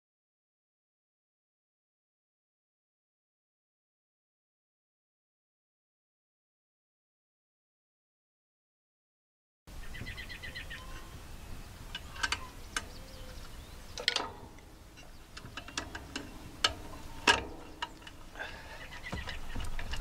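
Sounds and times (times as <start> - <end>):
wind rumble on microphone: 9.7 - 18.3, 18.9 - 20.0
birds chirping and trilling: 9.7 - 20.0
sharp clicks: 11.9 - 18.3.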